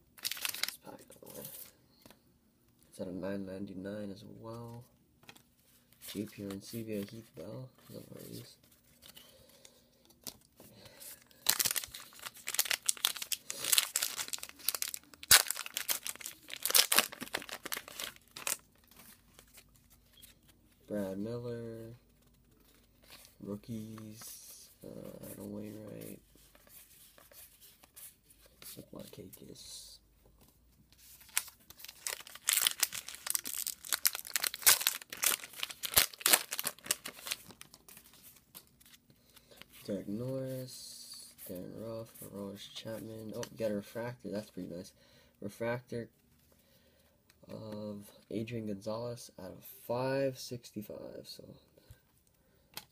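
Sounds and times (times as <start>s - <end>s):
wrapper being torn and crinkled: 0.2s - 0.9s, 11.4s - 19.8s, 31.1s - 38.2s.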